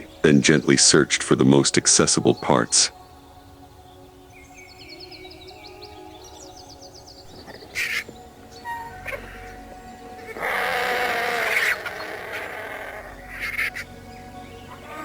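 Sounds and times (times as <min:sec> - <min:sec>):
soft background music: 0:00.0 - 0:15.0
vultures hissing: 0:07.4 - 0:09.6, 0:10.2 - 0:15.0.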